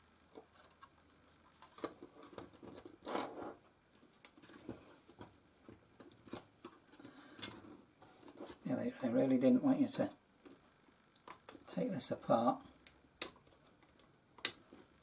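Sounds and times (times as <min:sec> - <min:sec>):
plastic parts clicking and scraping: 0:00.4 - 0:05.3.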